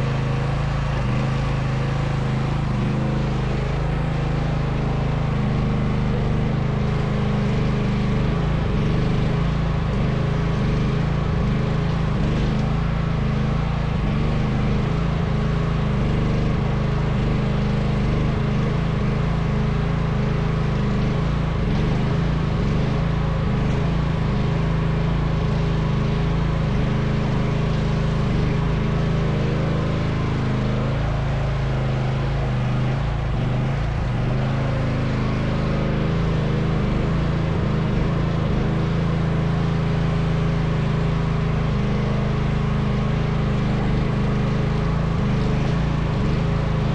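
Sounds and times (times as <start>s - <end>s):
excavator engine running: 0.0s - 7.4s, 22.3s - 46.9s.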